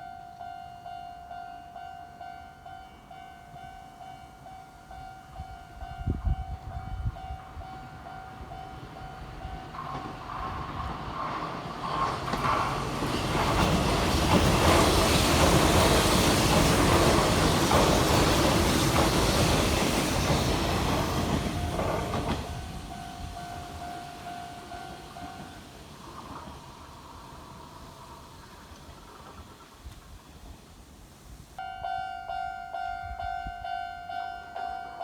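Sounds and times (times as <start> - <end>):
crossing warning bell ringing: 0.0 - 10.5, 15.4 - 25.9, 31.6 - 35.0
train wheels clattering over rail joints: 8.6 - 30.1.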